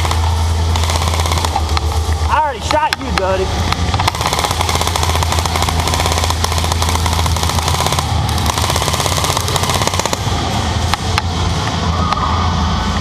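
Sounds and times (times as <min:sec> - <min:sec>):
airsoft guns firing bursts: 0:00.0 - 0:02.0, 0:03.9 - 0:11.2
steady low hum: 0:00.0 - 0:13.0.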